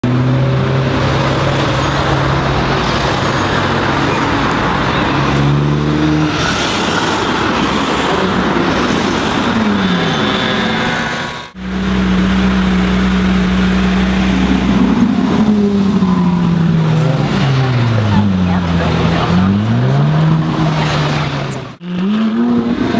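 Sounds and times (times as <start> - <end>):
sports car engine running: 10.8 - 22.9.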